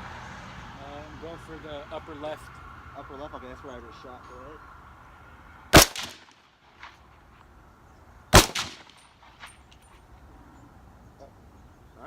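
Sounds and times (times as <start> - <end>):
rifle shots with echo: 5.7 - 7.0, 8.3 - 9.5.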